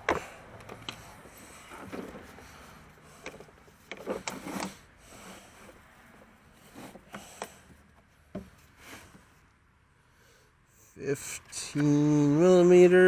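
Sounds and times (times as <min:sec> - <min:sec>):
hand tools clicking and knocking: 0:00.0 - 0:04.8.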